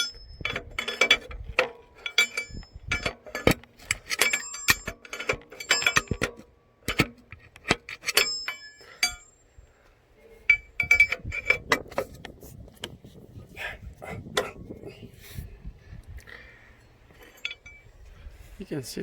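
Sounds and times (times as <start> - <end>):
metal tools clinking: 0.0 - 9.4, 10.2 - 12.1, 16.8 - 17.9.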